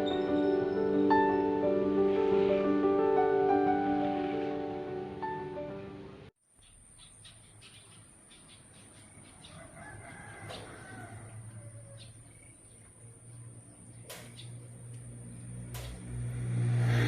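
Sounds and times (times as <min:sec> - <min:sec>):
rooster crowing: 0:09.4 - 0:12.3.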